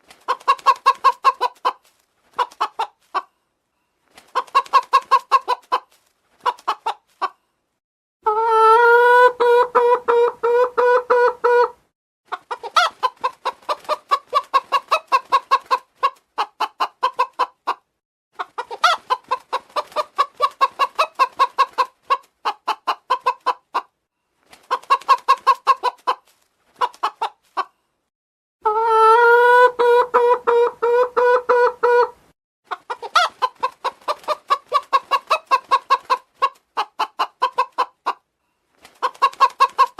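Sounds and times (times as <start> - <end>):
chicken clucking: 0.1 - 3.5, 4.2 - 7.5, 8.2 - 24.0, 24.6 - 27.9, 28.6 - 39.9
chicken drawn-out call: 8.2 - 17.8, 28.6 - 38.2.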